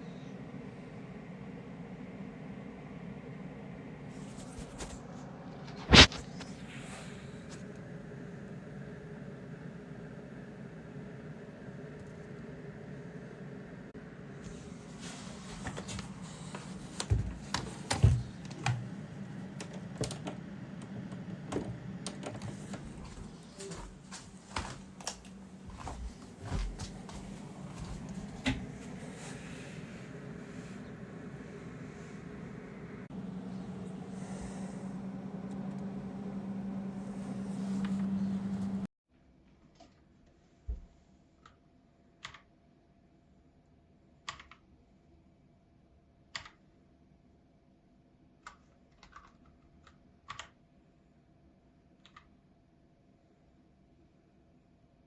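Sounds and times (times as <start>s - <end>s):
steady low hum: 0.0s - 38.9s
mechanical keyboard keystrokes: 48.4s - 50.6s.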